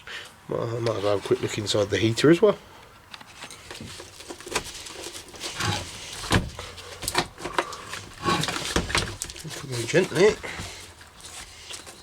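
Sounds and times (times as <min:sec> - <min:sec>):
light scraping: 0:03.2 - 0:07.0, 0:07.6 - 0:12.0.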